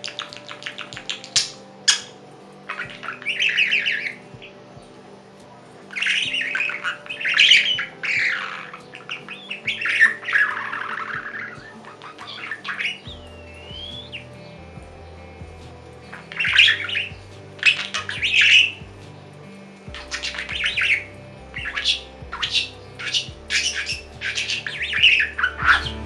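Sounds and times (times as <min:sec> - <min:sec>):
budgerigar chattering and squawking: 0:20.0 - 0:25.5.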